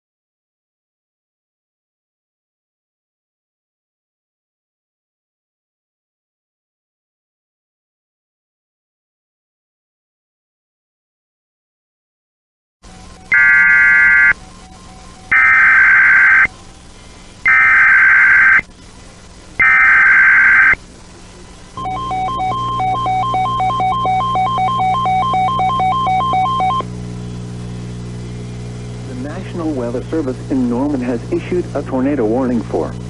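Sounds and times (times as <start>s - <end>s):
pulsing two-tone attention signal: 13.2s - 16.6s, 17.4s - 18.6s, 19.6s - 20.8s, 21.8s - 26.9s
screeching digital data tone: 13.3s - 14.4s, 15.2s - 16.5s, 17.4s - 18.6s, 19.6s - 20.8s, 21.8s - 26.8s.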